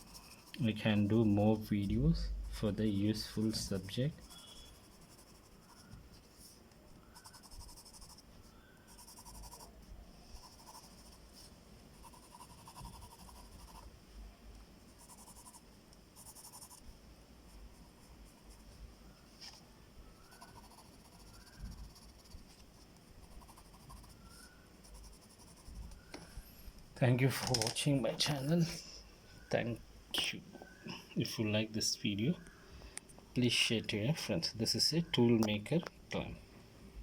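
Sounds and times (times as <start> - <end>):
pencil scratching on paper: 0.0 - 8.3, 8.9 - 9.7, 10.3 - 13.9, 14.9 - 15.6, 16.2 - 16.8, 20.2 - 22.6, 23.2 - 26.1.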